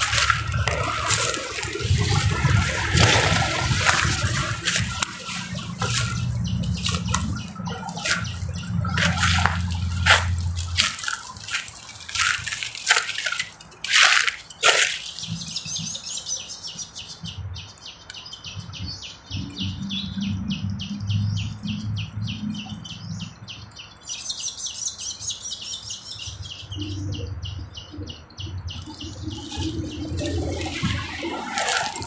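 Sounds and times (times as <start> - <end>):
low uneven rumble: 0.0 - 12.7
rapid repeated chirping: 0.0 - 21.7.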